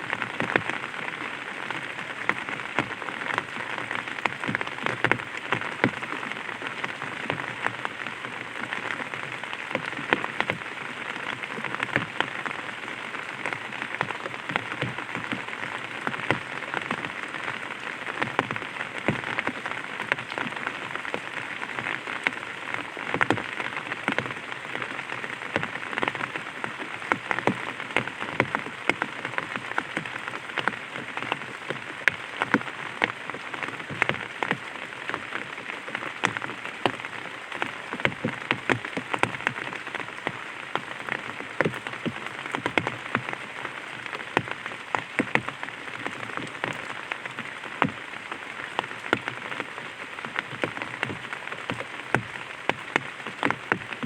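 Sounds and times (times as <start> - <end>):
rain pattering on an umbrella: 0.0 - 54.0.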